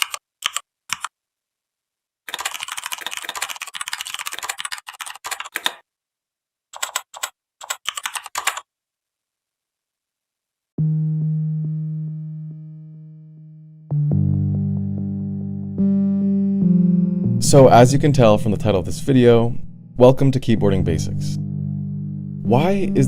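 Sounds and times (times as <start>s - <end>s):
keyboard typing: 0.0s - 1.2s, 2.3s - 5.8s, 6.7s - 8.7s
low sustained musical note: 10.8s - 23.0s.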